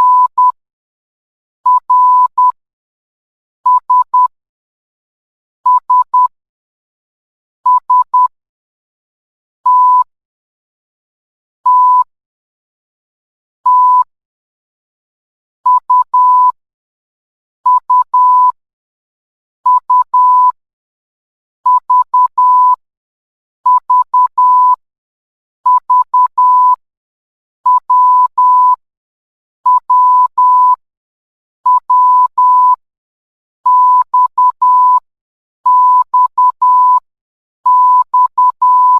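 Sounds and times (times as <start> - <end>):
morse code beeps: 0.0 - 0.6, 3.7 - 4.3, 5.7 - 6.3, 7.7 - 8.3, 25.7 - 26.8, 29.7 - 30.8, 31.7 - 32.8, 33.7 - 35.0, 35.7 - 37.0, 37.7 - 38.9.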